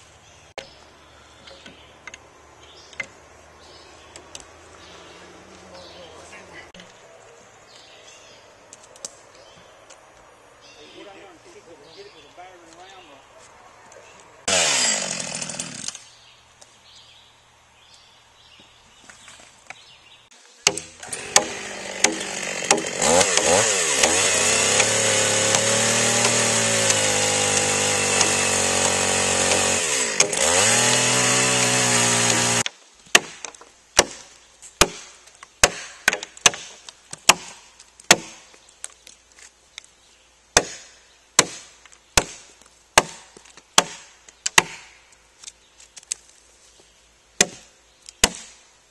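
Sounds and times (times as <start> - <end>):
chainsaw cutting log: 14.5 - 16.1, 20.6 - 33.4
chopping blows on wood: 32.1 - 38.5, 40.6 - 45.0, 47.4 - 48.6.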